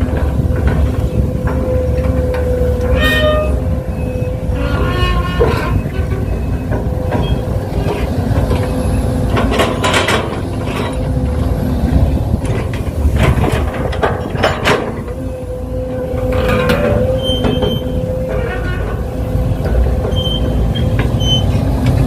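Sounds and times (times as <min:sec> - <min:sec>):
bucket scraping and clattering: 0:00.0 - 0:15.2
excavator whine and rumble: 0:00.0 - 0:22.0.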